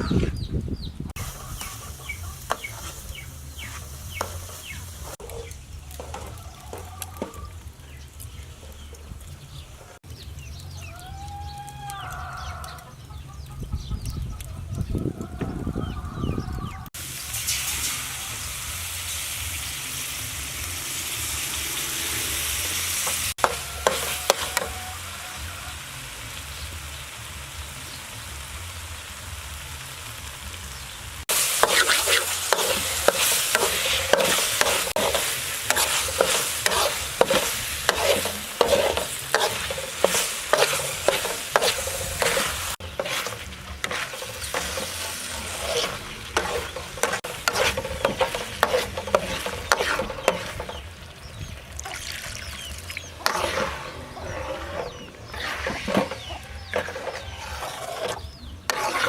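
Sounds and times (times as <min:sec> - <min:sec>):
spatula scraping a pan: 0:01.2 - 0:07.5, 0:21.4 - 0:24.9, 0:31.3 - 0:51.0, 0:52.4 - 0:59.0
food sizzling in a pan: 0:01.2 - 0:10.1, 0:16.9 - 0:59.0.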